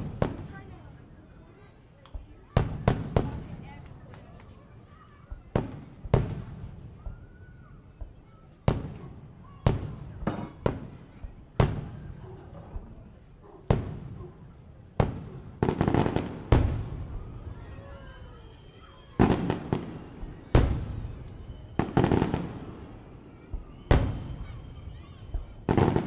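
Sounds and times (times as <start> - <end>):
fireworks booming: 15.0 - 26.0
fireworks crackling: 15.0 - 26.0.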